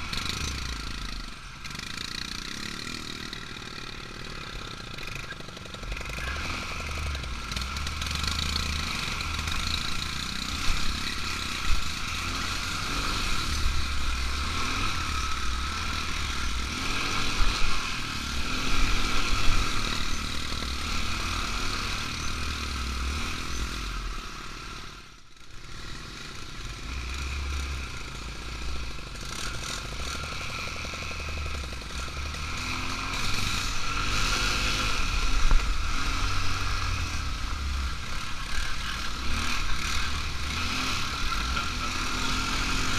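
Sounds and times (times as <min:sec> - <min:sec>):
atv engine running: 0:00.0 - 0:42.9.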